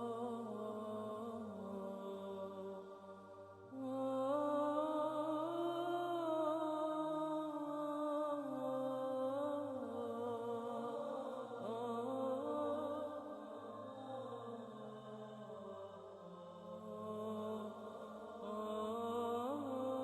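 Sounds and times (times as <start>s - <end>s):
wordless vocal chant: 0.0s - 20.0s.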